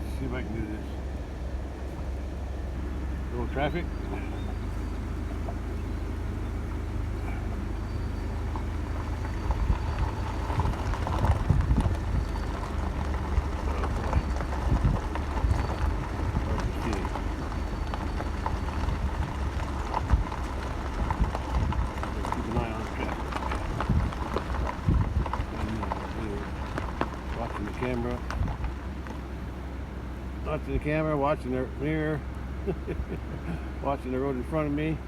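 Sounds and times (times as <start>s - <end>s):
car engine and road rumble: 0.0s - 35.0s
knocks and rattles: 8.3s - 29.3s.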